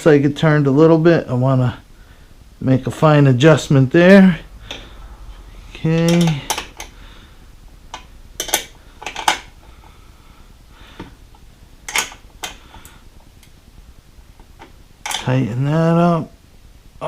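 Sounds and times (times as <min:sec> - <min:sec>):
hand tool clicking on metal: 0:06.0 - 0:06.9.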